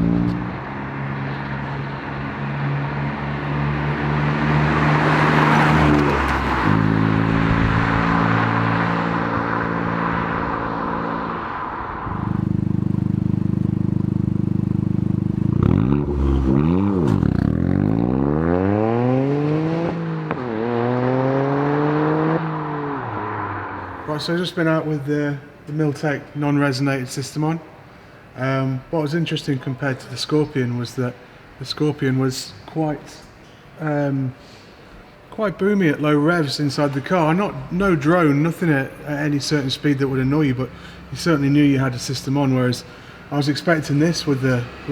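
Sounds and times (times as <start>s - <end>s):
car engine revving: 2.3s - 24.1s.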